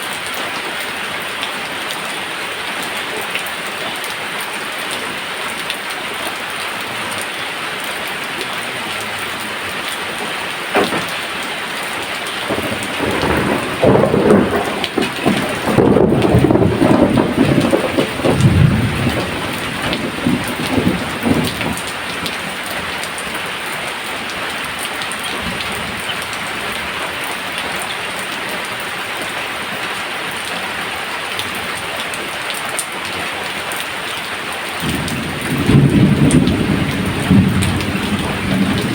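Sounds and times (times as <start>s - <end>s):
steady rain falling: 0.0s - 38.9s
thunder rumbling: 10.7s - 23.3s, 34.8s - 38.9s.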